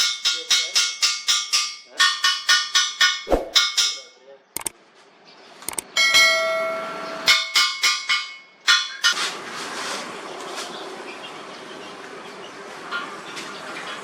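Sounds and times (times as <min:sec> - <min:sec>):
hammer striking steel: 0:00.0 - 0:04.7, 0:06.0 - 0:09.2.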